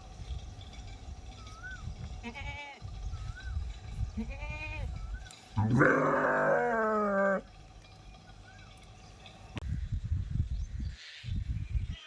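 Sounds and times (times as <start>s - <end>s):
sheep bleating: 5.6s - 7.4s.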